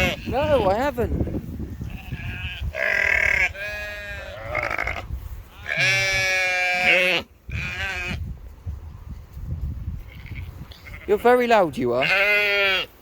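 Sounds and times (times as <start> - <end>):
sheep bleating: 0.0 - 0.8, 1.9 - 5.0, 5.6 - 8.2, 12.0 - 13.0
wind buffeting microphone: 0.0 - 12.2.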